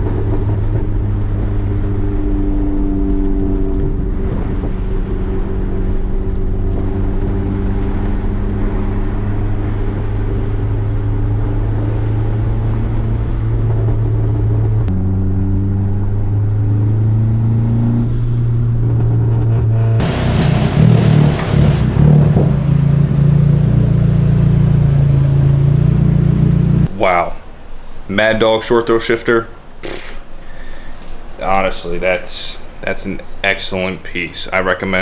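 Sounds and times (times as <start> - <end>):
car engine running: 20.0 - 27.0.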